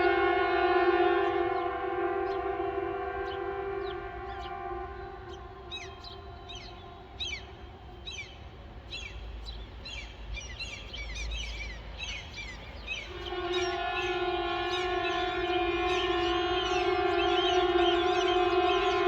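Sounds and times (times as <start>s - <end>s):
air-raid siren wailing: 0.0s - 8.9s, 13.0s - 19.0s
small birds chirping: 3.2s - 19.0s.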